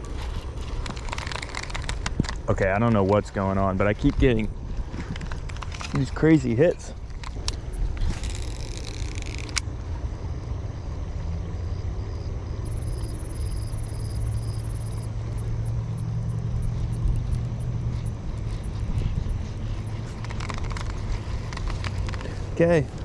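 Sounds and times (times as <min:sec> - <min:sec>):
low steady hum and rumble: 0:00.0 - 0:23.0
faint high pulsing chirp: 0:12.5 - 0:20.0.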